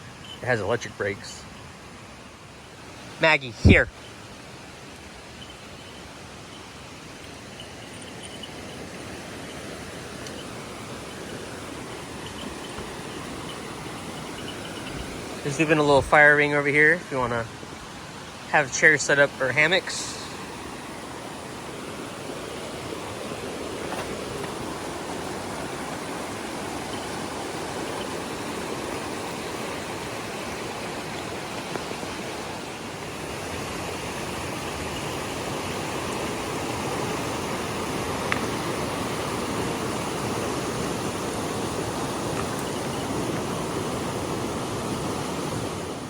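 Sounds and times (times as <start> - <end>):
river water rushing: 0.0 - 46.0.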